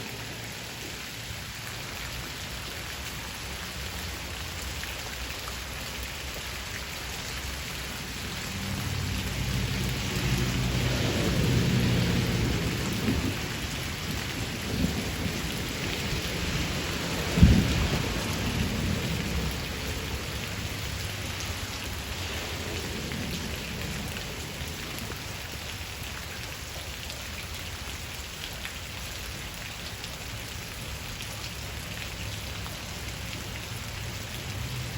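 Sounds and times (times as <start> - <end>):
steady rain: 0.0 - 34.9
low rumble of thunder: 10.1 - 25.2
sharp thunder crack: 16.5 - 19.0.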